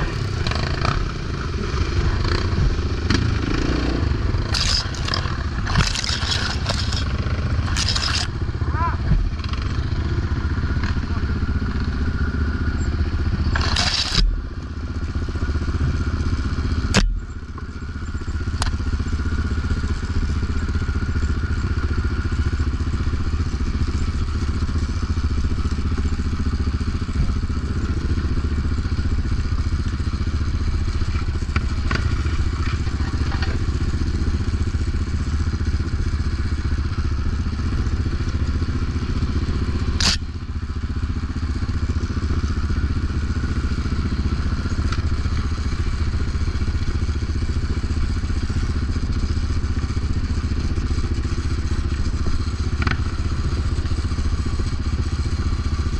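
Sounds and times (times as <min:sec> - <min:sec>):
atv engine running: 0:00.0 - 0:55.9
knocking clatter: 0:04.4 - 0:08.3.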